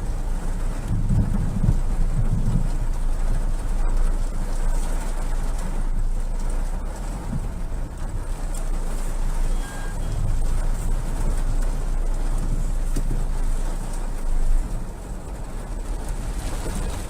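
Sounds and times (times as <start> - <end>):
heavy rain: 0.0 - 17.0.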